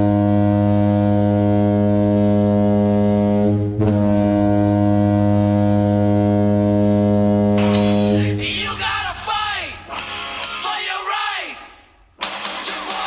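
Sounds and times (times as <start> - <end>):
deep goal horn blasting: 0.0 - 8.6.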